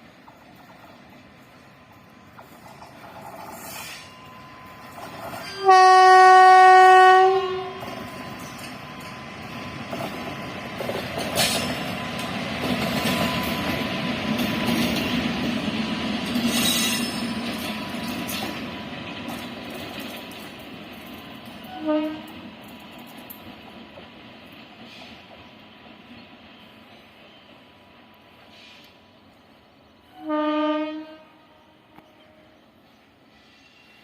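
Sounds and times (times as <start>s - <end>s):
train rumble and wheel clatter: 0.0s - 34.0s
train horn: 3.7s - 9.2s, 21.6s - 22.5s, 30.0s - 32.6s.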